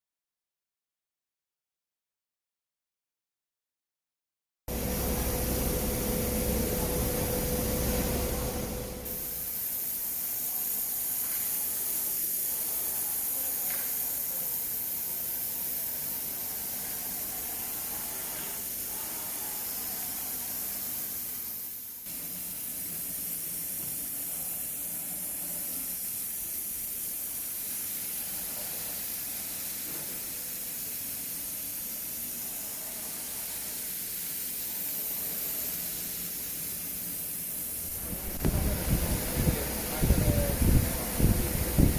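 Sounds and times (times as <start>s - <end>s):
low hum and rumble: 4.7s - 9.2s, 37.9s - 41.9s
router spindle high hiss: 4.7s - 11.4s, 37.8s - 41.9s.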